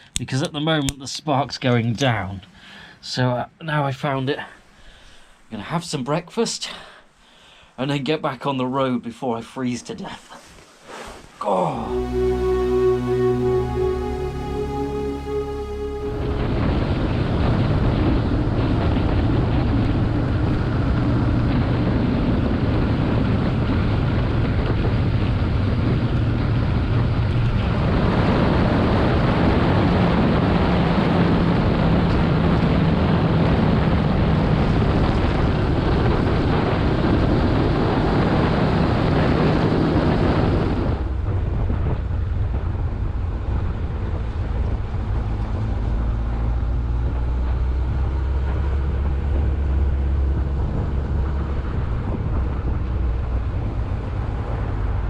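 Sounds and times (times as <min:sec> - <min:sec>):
wind noise on microphone: 0:16.2 - 0:55.0.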